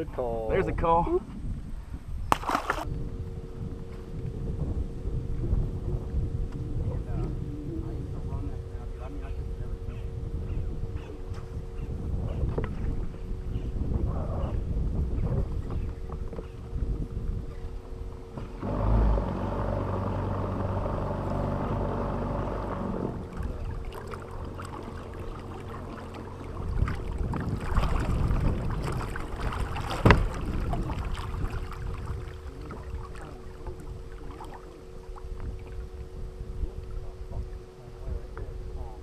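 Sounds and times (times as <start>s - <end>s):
boat motor running: 2.3s - 39.0s
steady thin whine: 16.7s - 39.0s.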